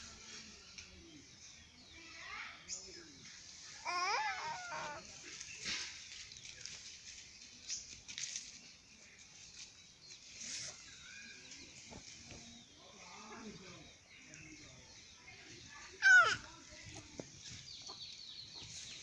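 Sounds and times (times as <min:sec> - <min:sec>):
small birds chirping: 0:00.0 - 0:19.0
faint low bird calls: 0:03.1 - 0:06.9.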